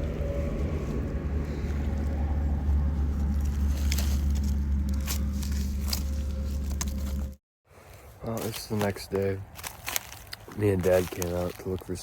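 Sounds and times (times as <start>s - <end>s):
vehicle engine low drone: 0.0s - 7.4s.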